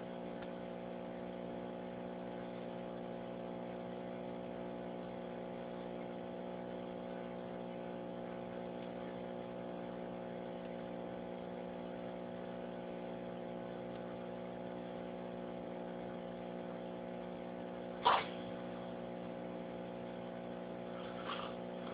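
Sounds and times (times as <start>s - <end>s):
mechanical hum: 0.0s - 21.9s.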